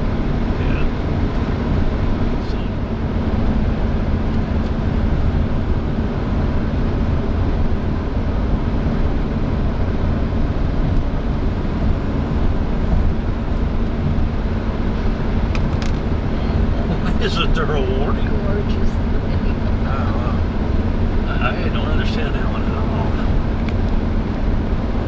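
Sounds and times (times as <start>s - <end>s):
vehicle road and engine rumble: 0.0s - 25.0s.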